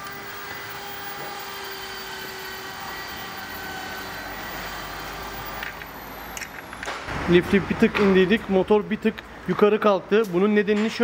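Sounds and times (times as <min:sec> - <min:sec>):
vehicle lift mechanical whine: 0:00.0 - 0:07.2.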